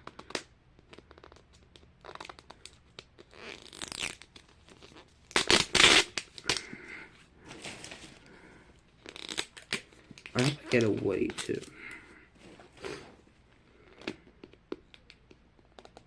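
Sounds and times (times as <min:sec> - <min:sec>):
plastic packaging tearing and crinkling: 0:00.1 - 0:06.7, 0:09.0 - 0:11.7.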